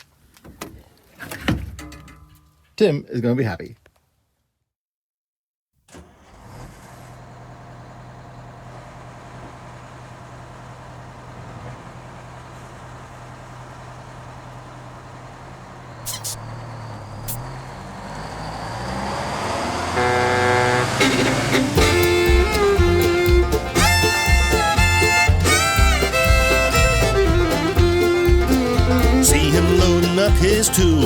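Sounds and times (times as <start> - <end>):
bus engine idling: 6.0 - 31.0
air hissing release: 16.0 - 16.5, 17.3 - 17.5.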